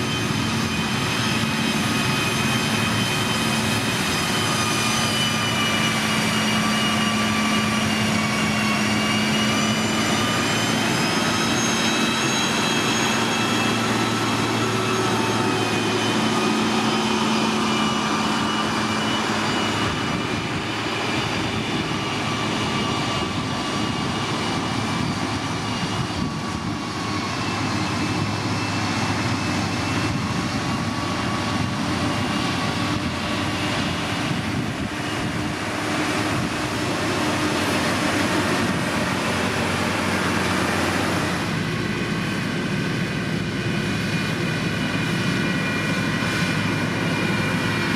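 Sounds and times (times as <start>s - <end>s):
diesel engine running: 0.0s - 47.9s
high whine: 0.0s - 47.9s.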